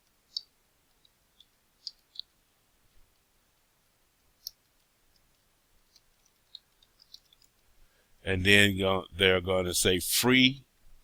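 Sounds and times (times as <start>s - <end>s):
computer mouse and key clicks: 0.0s - 2.4s, 4.4s - 7.7s.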